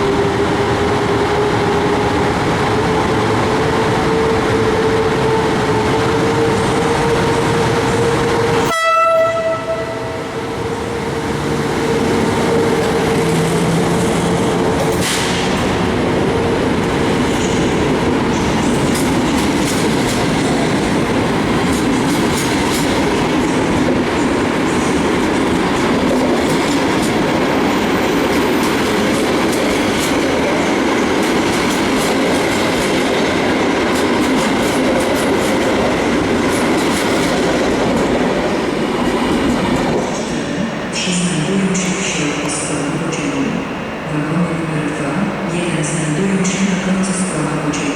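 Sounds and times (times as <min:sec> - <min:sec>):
train rolling: 0:00.0 - 0:47.9
train horn: 0:08.5 - 0:10.4.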